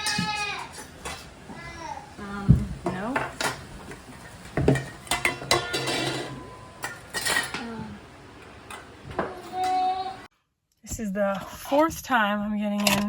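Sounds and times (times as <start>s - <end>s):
dishes clinking and clattering: 0.0s - 1.4s, 2.2s - 10.0s.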